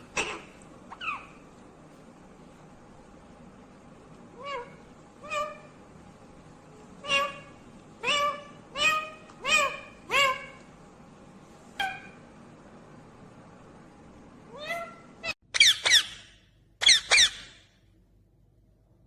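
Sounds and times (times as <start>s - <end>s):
parakeet calling: 0.0s - 1.4s, 4.3s - 5.8s, 7.0s - 10.7s, 11.8s - 12.2s, 14.5s - 17.6s.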